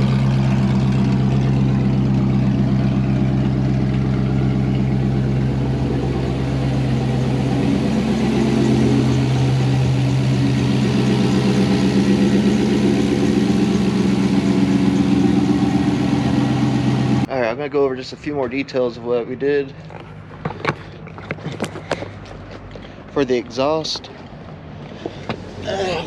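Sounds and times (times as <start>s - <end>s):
engine idling: 0.0s - 17.3s.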